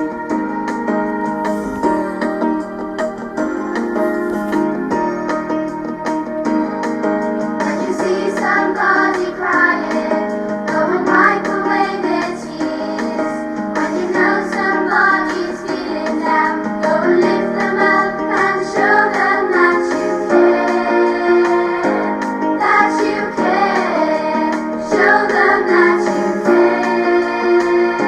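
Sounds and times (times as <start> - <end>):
piano accompaniment: 1.0 - 7.6
children singing: 1.4 - 5.1.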